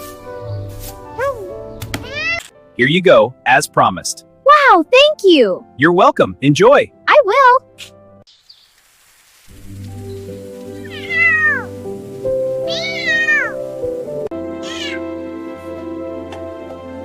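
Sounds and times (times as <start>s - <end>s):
background music: 0.0s - 8.3s, 9.5s - 17.0s
cat meowing: 2.0s - 2.5s, 10.8s - 11.7s, 12.6s - 13.6s, 14.6s - 15.1s.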